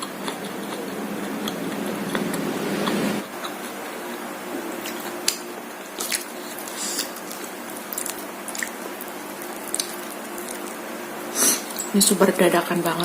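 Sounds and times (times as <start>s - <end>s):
close chewing and biting: 0.0s - 4.2s, 4.8s - 10.8s
low background hum: 0.0s - 13.0s
wet clicks and crunches: 7.0s - 10.8s.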